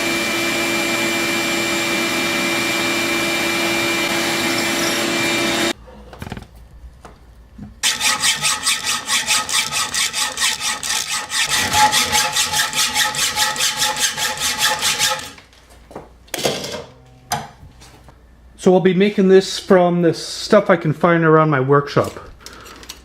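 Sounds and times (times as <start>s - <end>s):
power tool: 0.0s - 5.8s, 7.8s - 15.4s
hand saw cutting: 7.8s - 15.4s.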